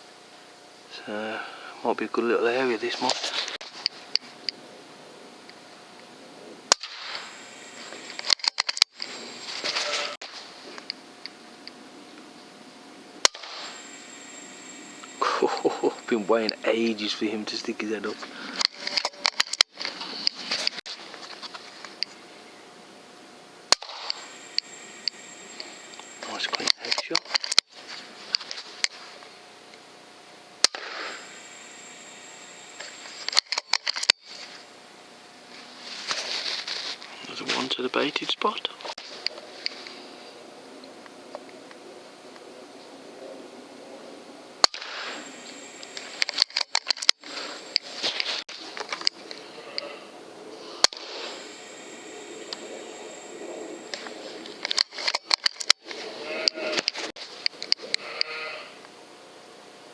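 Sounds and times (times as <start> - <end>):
air rifle shot: 6.7 - 7.3, 13.2 - 13.8, 30.6 - 31.3, 44.6 - 45.2
sharp clicks: 8.0 - 9.1, 18.6 - 20.8, 23.7 - 27.7, 32.8 - 34.2, 45.8 - 49.4, 53.9 - 58.3.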